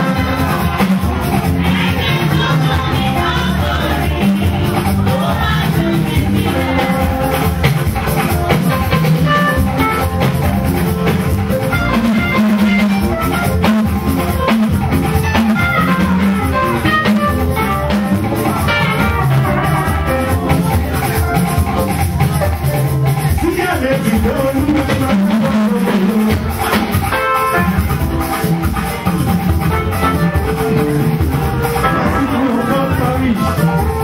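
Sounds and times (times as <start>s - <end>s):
live band playing: 0.0s - 34.0s.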